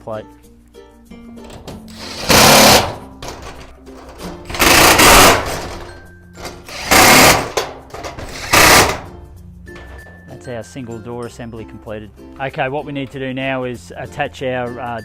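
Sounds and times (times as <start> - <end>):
cordless drill driving screws: 1.9 - 3.0, 4.5 - 5.9, 6.5 - 9.1.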